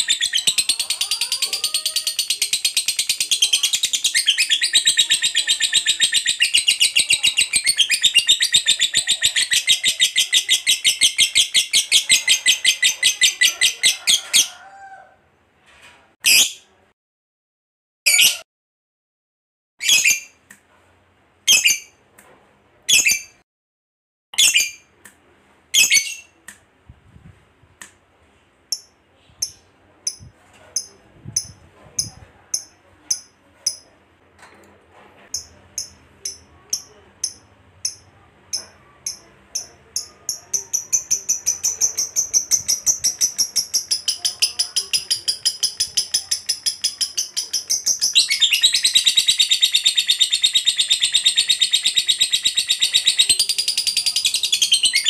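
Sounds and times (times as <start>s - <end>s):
lovebird calling and trilling: 0.0s - 14.5s, 19.8s - 20.4s, 35.3s - 55.0s.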